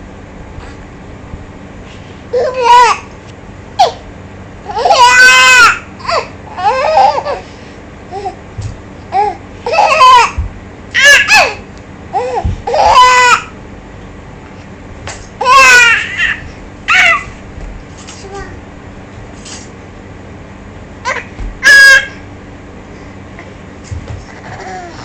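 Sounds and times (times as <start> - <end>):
baby babbling and laughing: 24.2 - 25.0.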